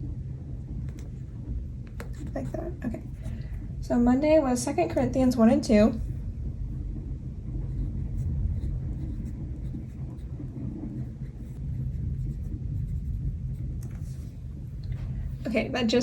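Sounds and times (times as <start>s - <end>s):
low thunderstorm rumble: 0.0s - 16.0s
pen scratching on paper: 2.0s - 3.5s, 7.6s - 14.5s.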